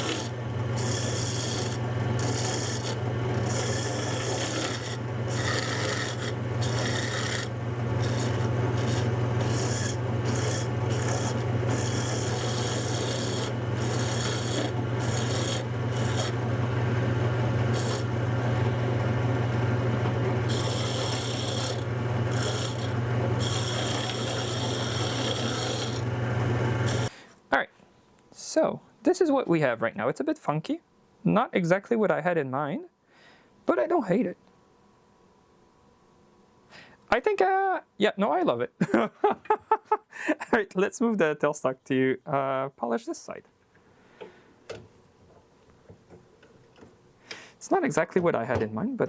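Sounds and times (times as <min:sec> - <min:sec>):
wood lathe motor hum: 0:00.0 - 0:27.1
wood scraping on lathe: 0:00.0 - 0:27.1.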